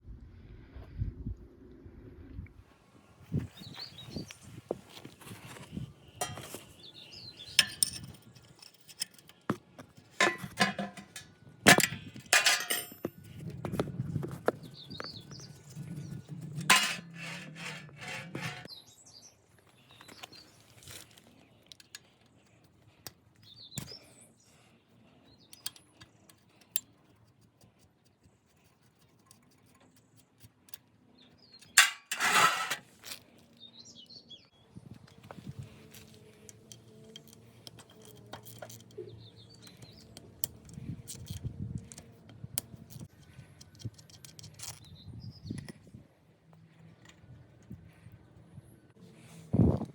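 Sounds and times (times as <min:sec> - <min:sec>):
metal tools clinking and knocking: 0:05.5 - 0:15.0, 0:15.6 - 0:18.7, 0:31.6 - 0:32.9.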